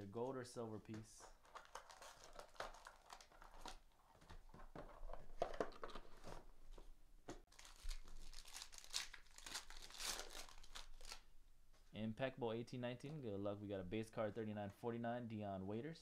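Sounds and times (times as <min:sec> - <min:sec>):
plastic wrapping tearing and crinkling: 0:01.3 - 0:04.0, 0:07.5 - 0:11.3.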